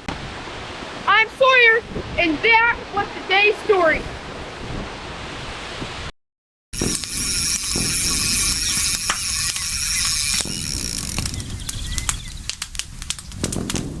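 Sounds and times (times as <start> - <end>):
campfire hissing: 6.8 - 14.0
fire crackling and popping: 6.8 - 14.0.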